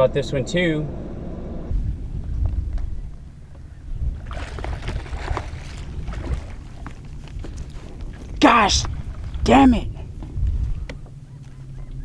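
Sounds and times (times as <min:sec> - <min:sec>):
wind rumbling on microphone: 0:01.0 - 0:12.0
splashing water: 0:04.1 - 0:09.6.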